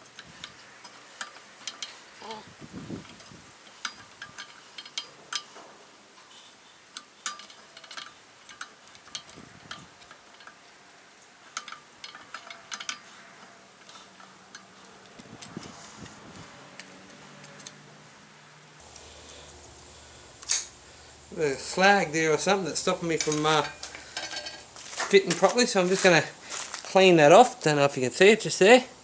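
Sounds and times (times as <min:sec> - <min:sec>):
metal padlock parts clicking: 0:00.0 - 0:18.8, 0:20.4 - 0:20.8, 0:23.1 - 0:26.2.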